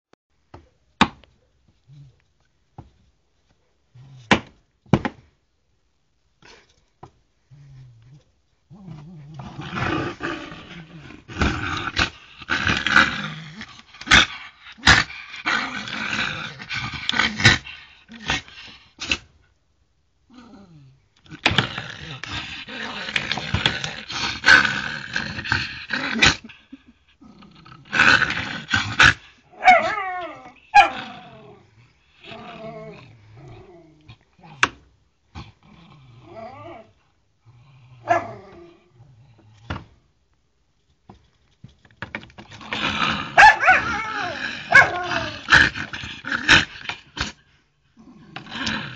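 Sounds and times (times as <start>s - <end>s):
dog growling: 7.4s - 19.3s, 20.3s - 39.9s, 42.4s - 48.9s
dog whining and yelping: 29.5s - 31.0s, 43.4s - 45.4s.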